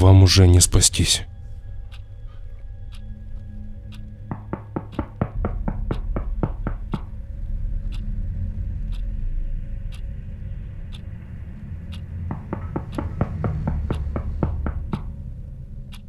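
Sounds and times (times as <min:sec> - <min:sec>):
sharp ticking clicks: 0:02.9 - 0:08.2, 0:11.8 - 0:16.0
low rumbling drone: 0:05.4 - 0:15.9.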